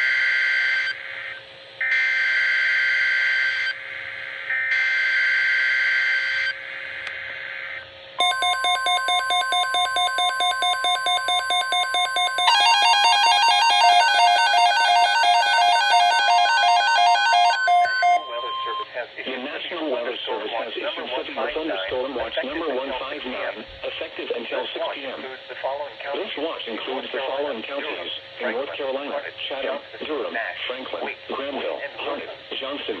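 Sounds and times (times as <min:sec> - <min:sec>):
pulsing electronic beeps: 0:08.2 - 0:18.9
steady warning alarm tone: 0:08.2 - 0:18.9.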